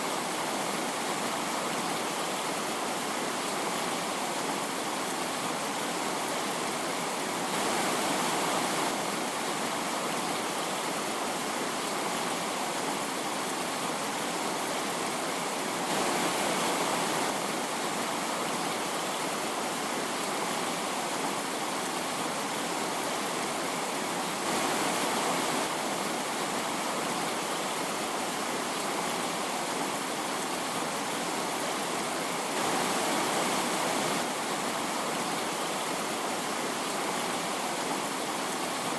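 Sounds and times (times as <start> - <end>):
steady rushing hiss: 4.2 - 11.3, 13.4 - 19.6, 22.7 - 37.7.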